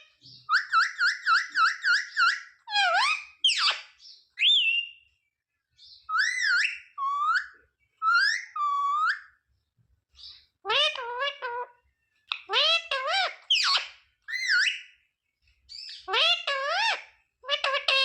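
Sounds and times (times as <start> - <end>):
parakeet whistling and calling: 0.1 - 5.1, 5.8 - 9.4, 10.2 - 11.7, 12.3 - 15.0, 15.7 - 18.0.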